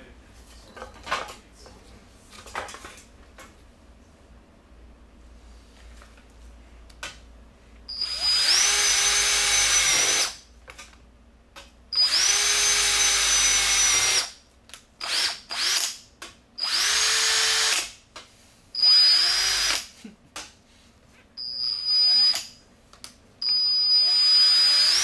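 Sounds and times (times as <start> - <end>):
cordless drill motor whining: 7.9 - 10.4, 12.0 - 14.2, 15.0 - 15.9, 16.6 - 17.8, 18.8 - 19.9, 21.4 - 22.5, 23.4 - 25.0.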